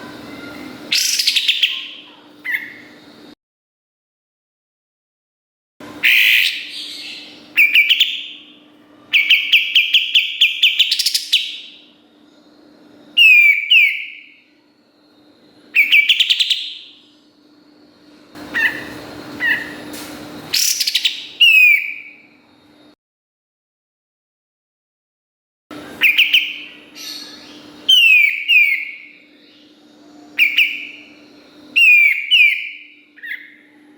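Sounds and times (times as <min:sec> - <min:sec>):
bird singing: 0:00.0 - 0:03.3, 0:06.0 - 0:19.9, 0:20.5 - 0:22.6, 0:26.0 - 0:33.9.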